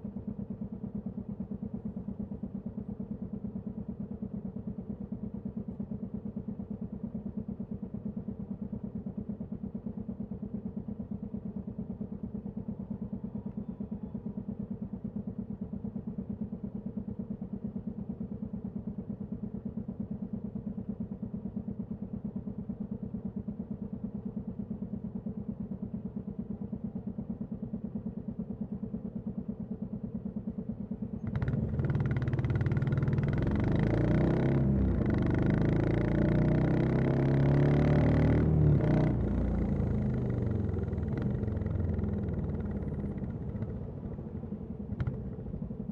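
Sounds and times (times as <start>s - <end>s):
motorcycle engine idling and revving: 0.0s - 45.9s.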